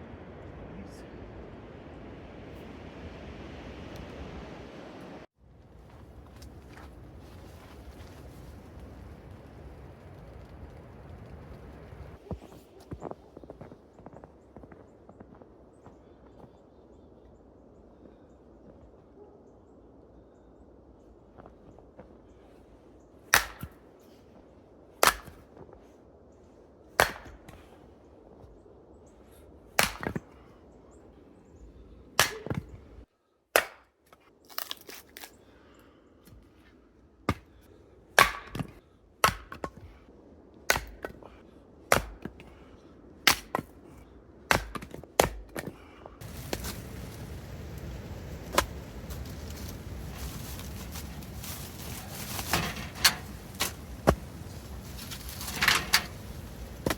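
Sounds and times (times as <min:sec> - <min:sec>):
axe chopping firewood: 0:23.3 - 0:23.8, 0:25.0 - 0:25.5, 0:27.0 - 0:27.6, 0:29.8 - 0:30.3, 0:32.2 - 0:32.8, 0:33.5 - 0:34.8, 0:37.3 - 0:37.6, 0:38.2 - 0:39.9, 0:40.7 - 0:41.3, 0:41.9 - 0:42.6, 0:43.2 - 0:43.8, 0:44.5 - 0:47.5, 0:48.4 - 0:56.9.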